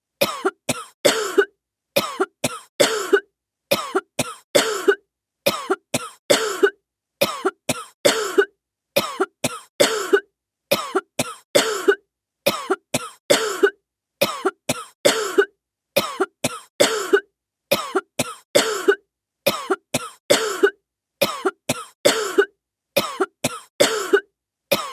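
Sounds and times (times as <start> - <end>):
person coughing: 0.2 - 24.9.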